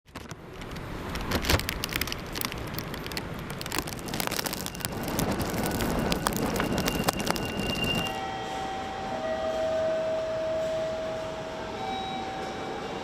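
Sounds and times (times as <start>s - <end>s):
heavy rain and wind: 0.1s - 8.2s
rain spattering close by: 1.1s - 8.1s.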